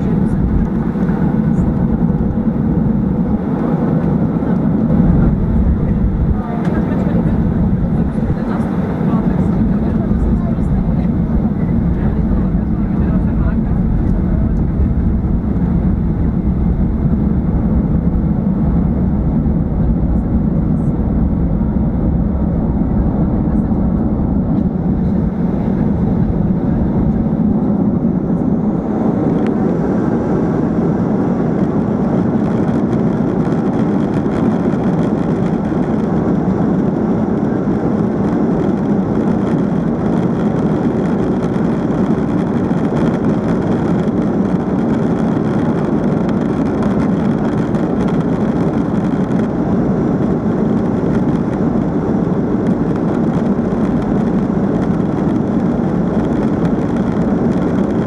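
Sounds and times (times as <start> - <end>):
airplane cabin engine rumble: 0.0 - 58.0.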